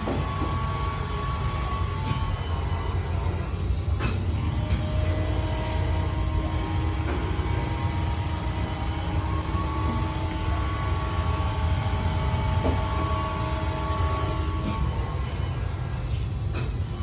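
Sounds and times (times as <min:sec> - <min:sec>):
faint whining tones: 0:00.0 - 0:17.0
machinery hum and rumble: 0:00.0 - 0:17.0.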